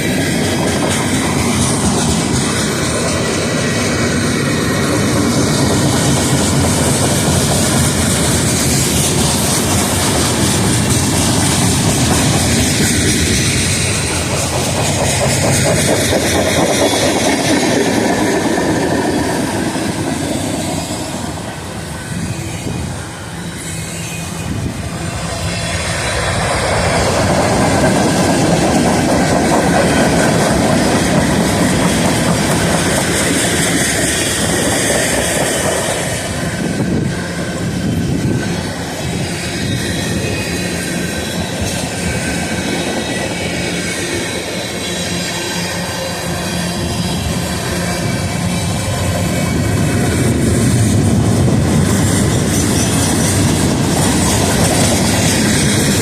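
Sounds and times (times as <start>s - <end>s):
freight train wheels clacking: 0.0s - 56.0s.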